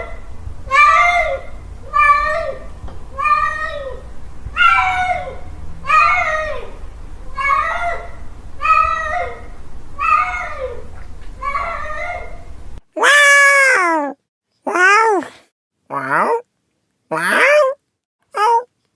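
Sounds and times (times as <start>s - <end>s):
cat yowling: 0.0s - 14.0s.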